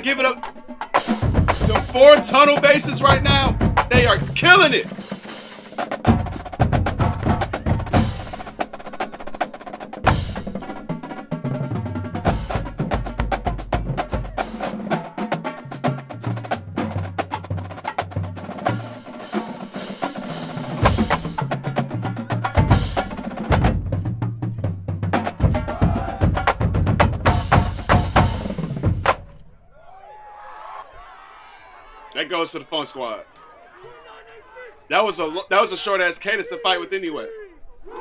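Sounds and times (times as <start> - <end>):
snare drum strokes: 0.0 - 11.3, 12.3 - 23.7
bass drums: 0.9 - 5.0, 5.8 - 9.0, 10.0 - 10.9, 11.6 - 15.1, 20.2 - 29.4.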